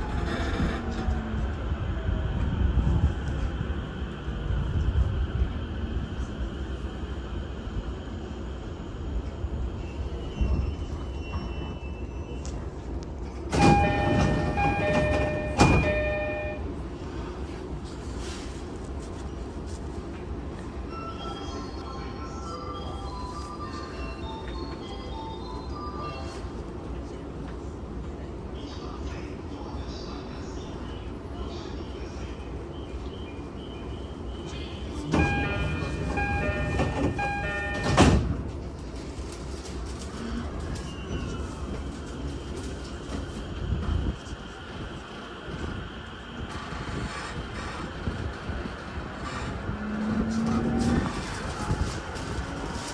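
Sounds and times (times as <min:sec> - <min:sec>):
train hum: 0:00.0 - 0:25.6, 0:26.2 - 0:52.9
sliding doors thudding: 0:13.5 - 0:16.5, 0:35.2 - 0:38.4
two-tone door chime: 0:13.5 - 0:16.6, 0:35.1 - 0:38.3.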